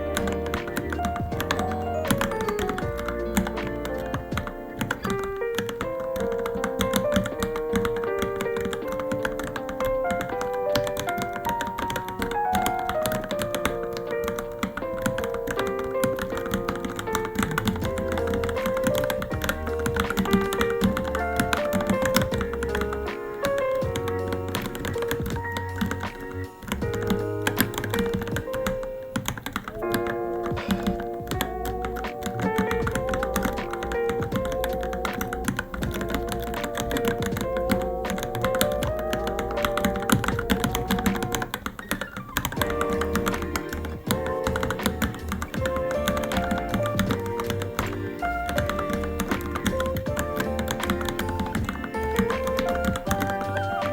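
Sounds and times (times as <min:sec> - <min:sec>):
background music with bass: 0:00.0 - 0:28.7, 0:29.7 - 0:41.7, 0:42.4 - 0:53.9
keyboard key clicks: 0:00.0 - 0:53.9.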